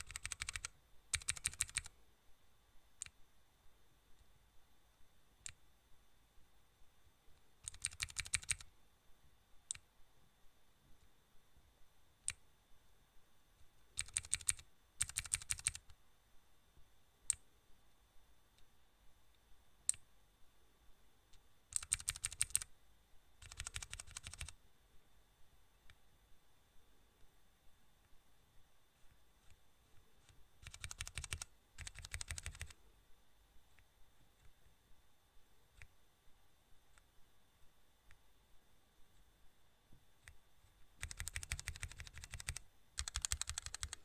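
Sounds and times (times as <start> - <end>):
rapid clicking: 0.0 - 1.9, 14.0 - 15.8, 21.7 - 22.6, 30.6 - 32.7, 41.0 - 44.0
faint high-pitched whine: 0.0 - 44.0.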